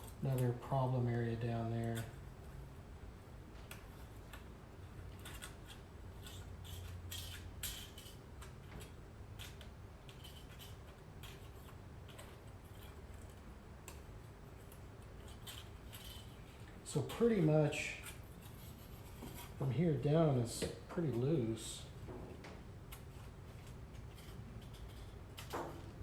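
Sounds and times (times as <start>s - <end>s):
low steady hum: 0.0s - 26.0s.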